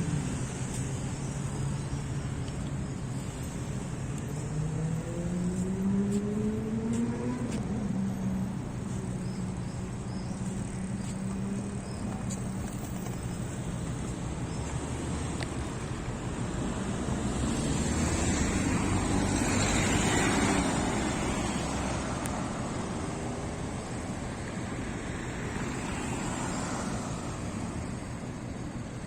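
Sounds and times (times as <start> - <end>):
vehicle passing by: 4.3 - 9.2, 16.4 - 22.8.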